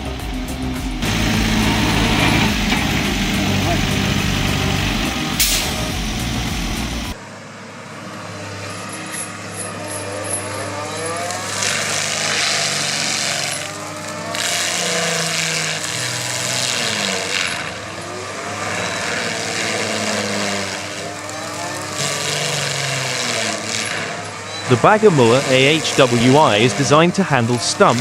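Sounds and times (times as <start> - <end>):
machine engine running: 0.0 - 28.0
harsh rushing bursts: 11.1 - 28.0.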